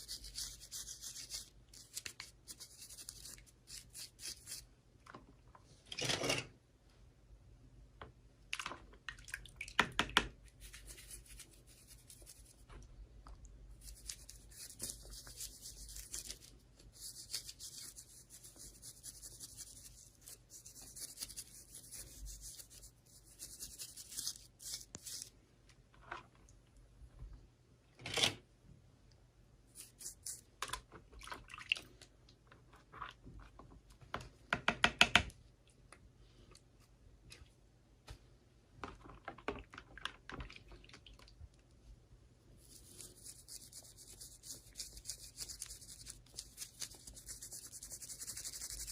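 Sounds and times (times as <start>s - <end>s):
sharp knocks and clicks: 34.1s - 35.3s.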